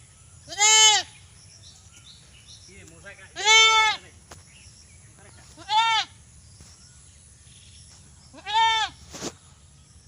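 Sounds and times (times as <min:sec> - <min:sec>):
goat bleating: 0:00.5 - 0:01.1, 0:03.3 - 0:04.1, 0:05.5 - 0:06.2, 0:08.3 - 0:09.0.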